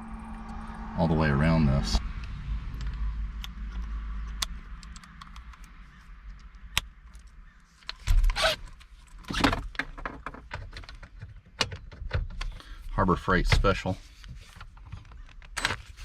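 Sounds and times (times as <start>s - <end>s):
rattle and thump: 7.9s - 8.4s, 9.1s - 12.6s.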